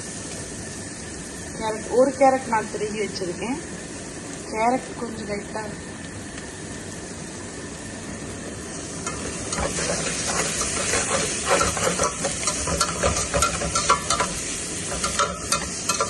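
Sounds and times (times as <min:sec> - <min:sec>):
vegetables sizzling in oil: 0:00.0 - 0:16.0
spoon scraping a pan: 0:09.0 - 0:16.0.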